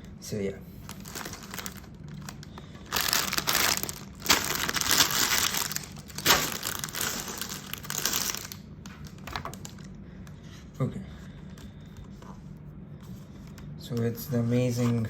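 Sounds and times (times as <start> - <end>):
packaging crinkling and rustling: 0.8 - 10.0.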